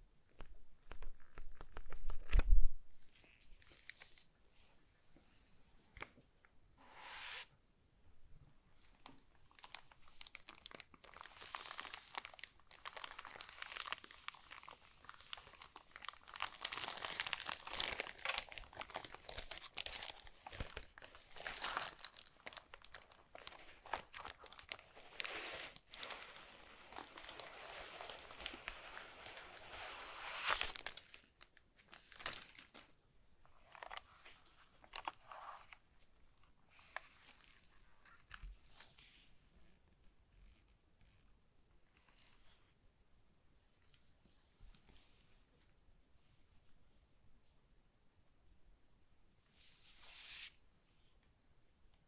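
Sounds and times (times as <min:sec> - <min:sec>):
packaging crinkling by hand: 0:09.0 - 0:36.0.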